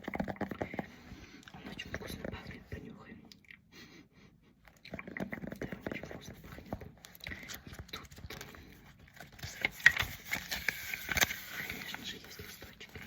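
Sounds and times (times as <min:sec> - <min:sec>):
paper rustling and crackling: 0:05.3 - 0:13.0.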